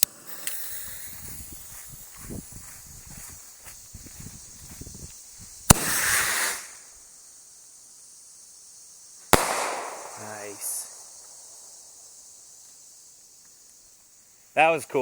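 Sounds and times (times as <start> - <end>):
firework fuse sputtering: 0.0 - 3.0, 4.4 - 7.2
firework motor hissing: 0.0 - 3.0, 4.3 - 7.2
firework bang: 5.7 - 6.7, 9.4 - 11.1.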